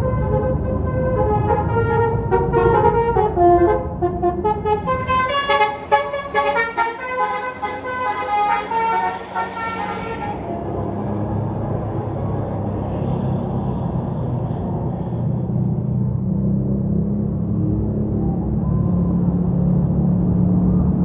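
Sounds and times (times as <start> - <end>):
bus horn playing melody: 0.0 - 11.2
bus engine rumble: 0.0 - 21.0.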